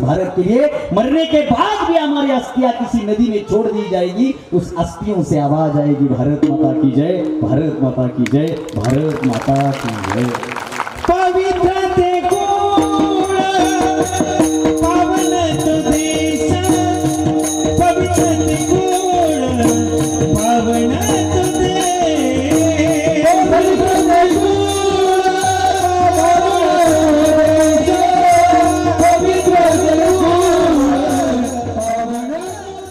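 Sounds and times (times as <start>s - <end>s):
jingling beat: 11.1s - 32.9s.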